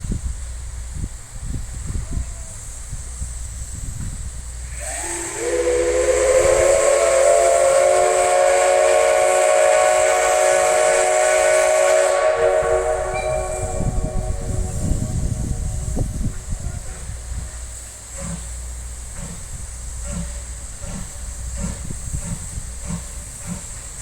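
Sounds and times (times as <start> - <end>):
steam hissing: 0.1 - 24.0
steam locomotive whistle: 4.6 - 18.4
whistle echo off mountains: 4.8 - 17.8.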